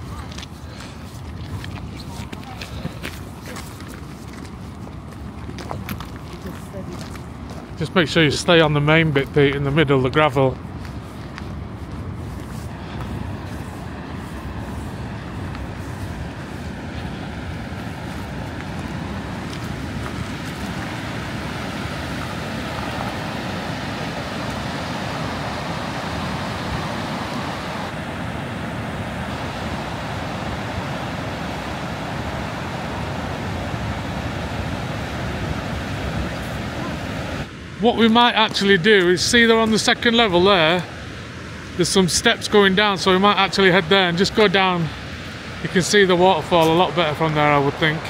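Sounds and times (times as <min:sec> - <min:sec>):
wind buffeting microphone: 0:10.1 - 0:41.8
waterfall roar: 0:12.7 - 0:48.0.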